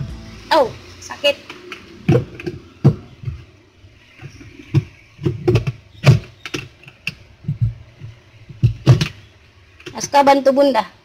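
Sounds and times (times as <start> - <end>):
sharp plastic clicks and knocks: 4.2 - 10.2.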